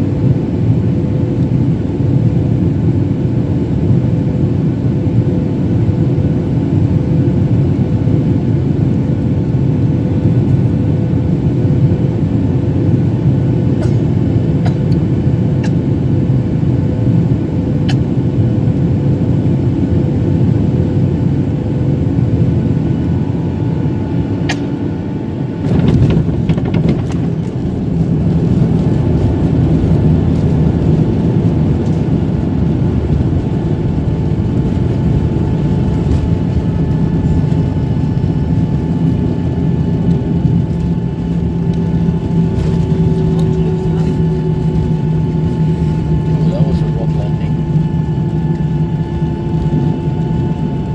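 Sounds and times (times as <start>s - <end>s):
jet engine roar in cabin: 0.0s - 50.9s
steady hum: 22.2s - 50.9s
thump and rattle: 25.7s - 27.6s.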